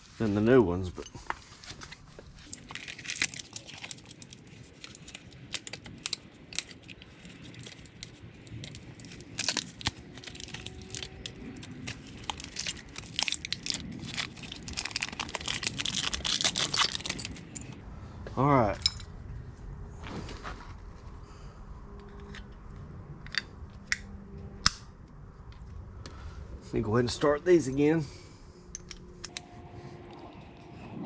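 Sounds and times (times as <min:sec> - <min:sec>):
crinkling tearing rustles: 0:02.5 - 0:17.8.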